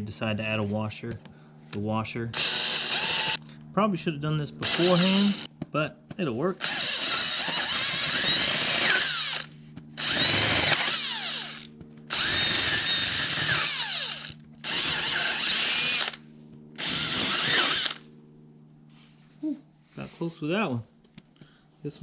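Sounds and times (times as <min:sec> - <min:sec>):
power drill boring into wood: 0:02.4 - 0:03.4, 0:04.6 - 0:05.5, 0:06.6 - 0:16.2, 0:16.8 - 0:18.1.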